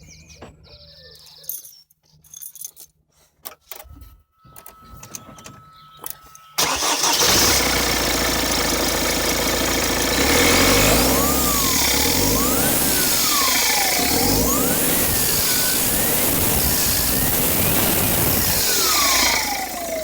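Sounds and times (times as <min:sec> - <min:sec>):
diesel engine starting and running: 0:06.6 - 0:20.0.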